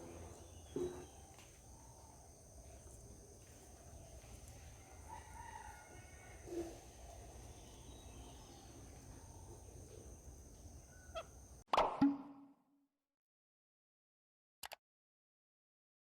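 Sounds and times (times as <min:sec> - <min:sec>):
distant bird calls: 0:00.0 - 0:11.6.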